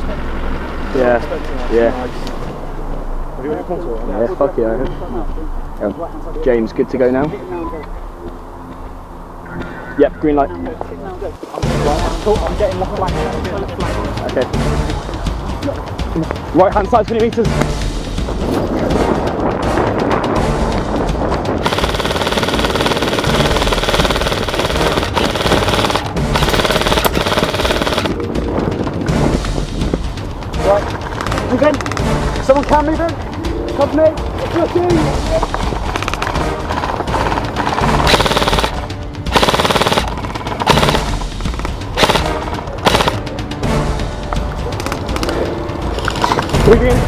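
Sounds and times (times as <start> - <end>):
background music: 0.0 - 47.0
airsoft guns firing full-auto: 21.6 - 28.2, 35.9 - 43.2.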